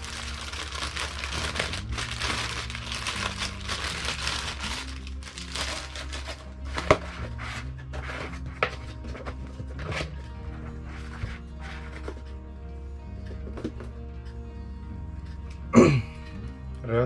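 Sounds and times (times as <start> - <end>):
plastic wrapping crinkling: 0.0 - 7.6
background music: 0.0 - 17.0.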